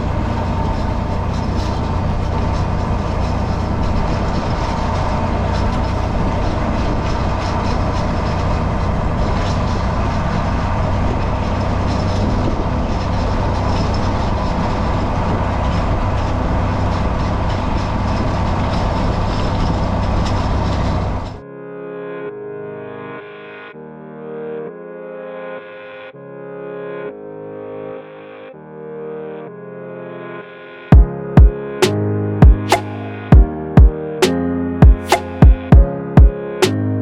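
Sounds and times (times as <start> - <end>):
tractor engine running: 0.0 - 21.4.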